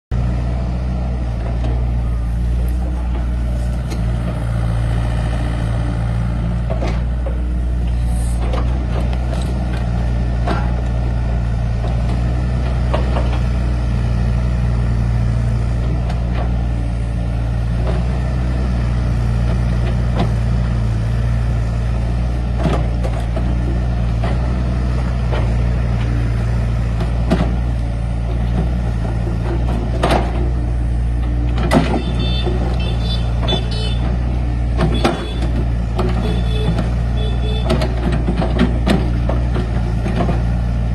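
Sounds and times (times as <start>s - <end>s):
excavator diesel engine running: 0.1s - 40.9s.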